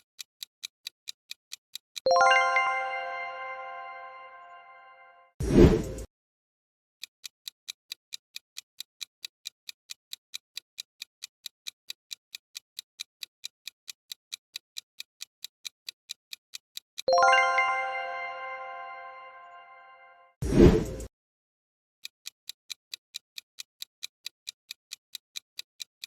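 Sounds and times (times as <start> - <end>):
clock-like ticking: 0.0 - 4.5, 5.4 - 6.1, 7.0 - 19.6, 22.0 - 26.0
short whoosh: 5.4 - 6.1, 20.4 - 21.1.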